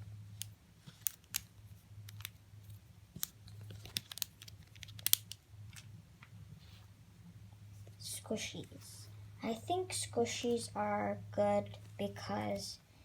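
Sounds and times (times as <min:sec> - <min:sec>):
steady low hum: 0:00.0 - 0:13.0
fidget toy clicking: 0:04.0 - 0:05.4.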